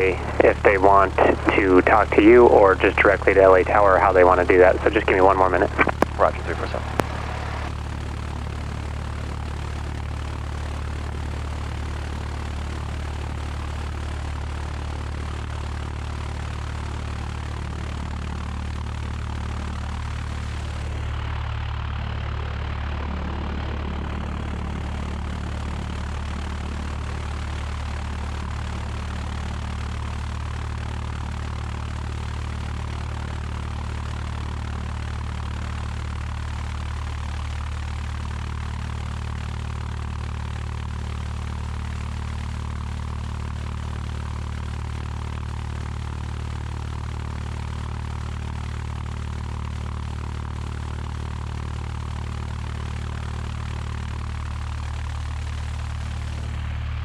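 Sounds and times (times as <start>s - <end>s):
propeller plane engine idling: 0.0s - 57.0s.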